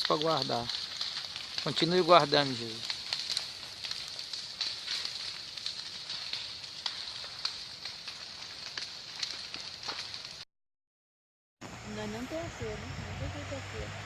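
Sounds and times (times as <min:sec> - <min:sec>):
burning vegetation crackling: 0:00.0 - 0:10.4, 0:11.6 - 0:14.0
steady high hiss: 0:11.6 - 0:13.5.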